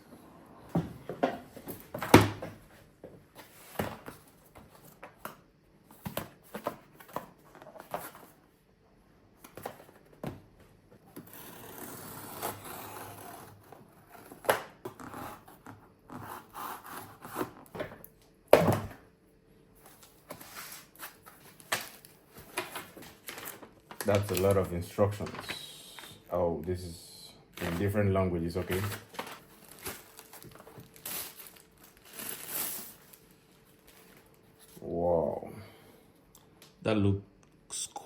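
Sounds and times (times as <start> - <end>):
packaging clicks and rustles: 21.2 - 26.2, 28.6 - 34.4
packaging rubbing or tearing: 28.7 - 33.2.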